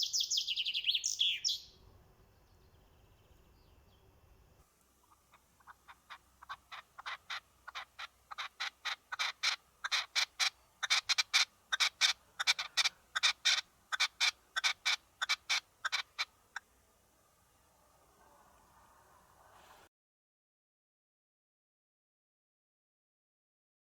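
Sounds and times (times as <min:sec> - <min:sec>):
sparrow cheeping: 0:00.0 - 0:01.8, 0:05.0 - 0:16.3.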